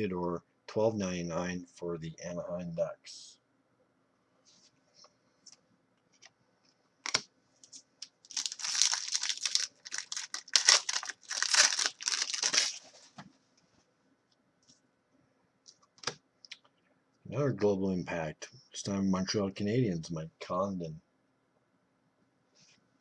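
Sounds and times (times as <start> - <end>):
wrapper ripping and crinkling: 8.0 - 13.0.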